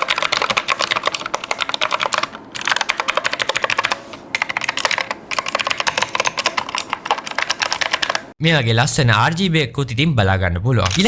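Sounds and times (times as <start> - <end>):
fast mechanical keyboard typing: 0.0 - 8.4.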